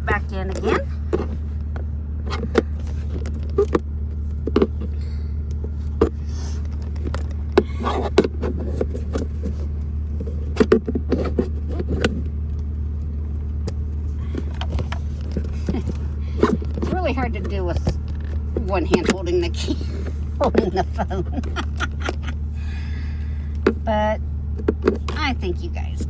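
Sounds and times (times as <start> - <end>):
steady low hum: 0.0 - 26.0
screwdriver scraping plastic: 6.0 - 12.2.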